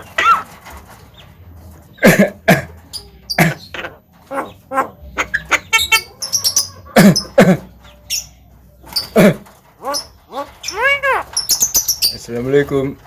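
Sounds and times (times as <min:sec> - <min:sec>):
bird giving harsh calls: 0:03.3 - 0:07.5, 0:08.9 - 0:12.2.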